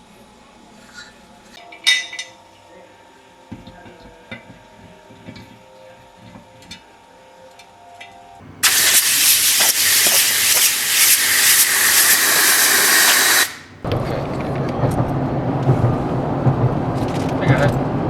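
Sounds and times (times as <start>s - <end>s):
loud hiss of escaping air: 8.4s - 13.8s
low steady rumbling: 13.7s - 18.0s.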